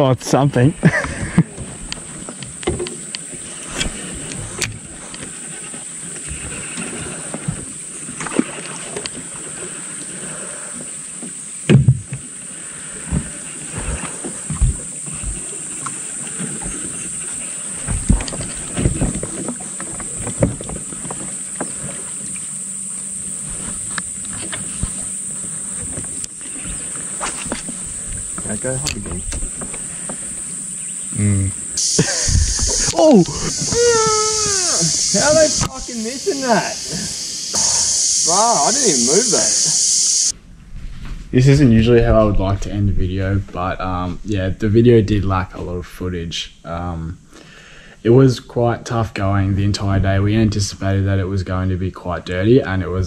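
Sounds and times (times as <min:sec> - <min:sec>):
high-pitched insect drone: 0:00.9 - 0:40.3
knocks and thumps: 0:11.7 - 0:12.2, 0:13.1 - 0:15.4, 0:17.8 - 0:22.0, 0:32.0 - 0:34.6.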